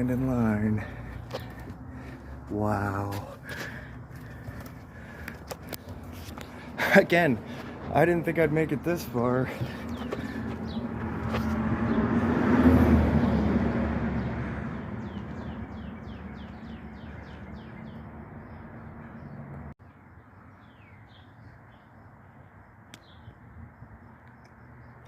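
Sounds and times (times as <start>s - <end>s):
motor vehicle passing by: 8.8s - 19.7s
bird chirping: 9.5s - 12.0s, 15.0s - 23.4s.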